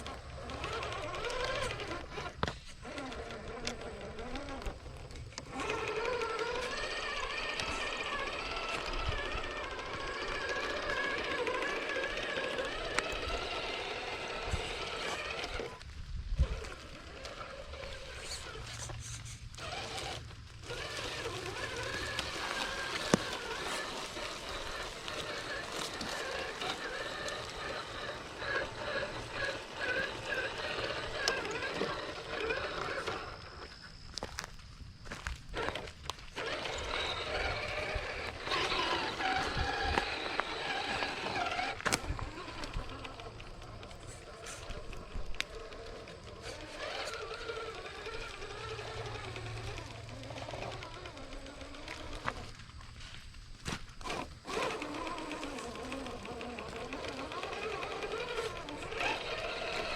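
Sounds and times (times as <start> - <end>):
electric motor whining: 0.0 - 59.9
toy truck bumping over rocks: 0.0 - 59.9
small clicks: 38.3 - 59.9.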